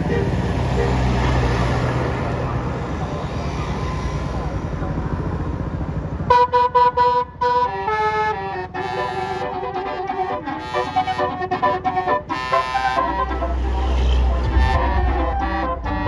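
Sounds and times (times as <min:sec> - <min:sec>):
multi-tone air horn playing tune: 0:06.3 - 0:16.0.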